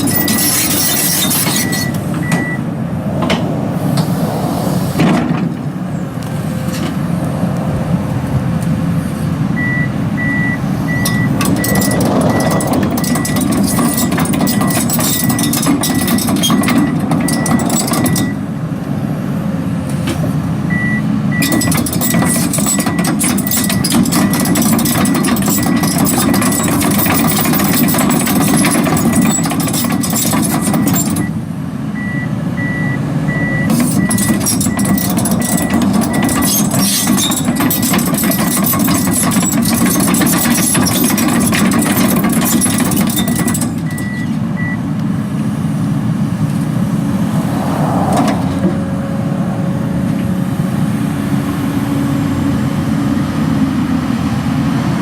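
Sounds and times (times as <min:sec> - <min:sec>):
diesel engine running: 0:00.0 - 0:55.0
travel alarm beeping: 0:01.6 - 0:02.7, 0:09.6 - 0:13.4, 0:20.7 - 0:21.7, 0:32.0 - 0:36.5, 0:43.2 - 0:44.8.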